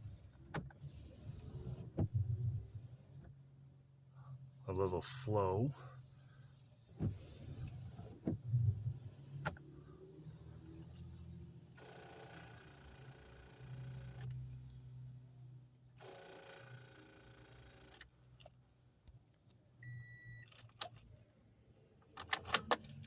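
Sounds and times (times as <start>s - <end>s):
windshield wipers sweeping glass: 6.9s - 9.6s
short electronic beep: 19.8s - 20.5s.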